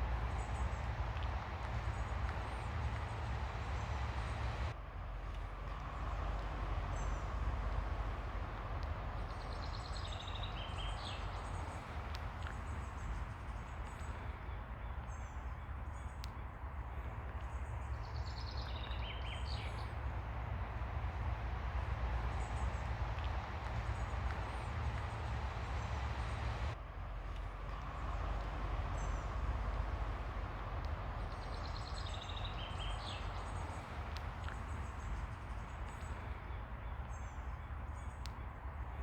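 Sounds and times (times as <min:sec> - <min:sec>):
ocean waves on a beach: 0:00.0 - 0:04.7, 0:16.9 - 0:37.3.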